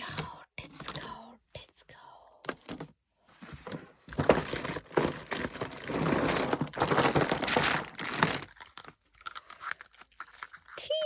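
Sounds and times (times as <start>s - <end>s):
crackly crunching: 4.4s - 11.0s.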